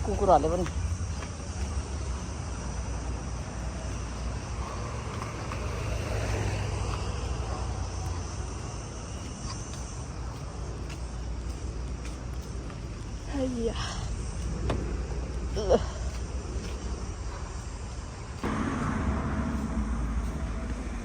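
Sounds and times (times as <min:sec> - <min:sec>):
vehicle passing: 0:00.0 - 0:09.6, 0:18.4 - 0:21.0
insects chirring: 0:00.0 - 0:21.0
traffic rumble: 0:00.0 - 0:21.0.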